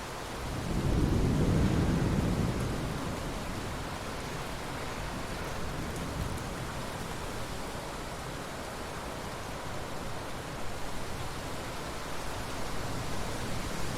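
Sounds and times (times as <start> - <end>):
steady rain: 0.0 - 13.9
low roll of thunder: 0.5 - 7.1.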